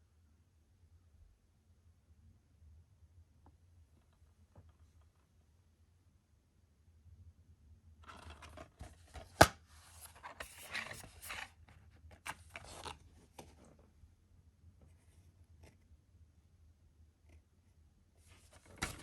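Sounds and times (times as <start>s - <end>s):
plastic case scraping and rustling: 8.0s - 13.7s, 18.4s - 19.0s.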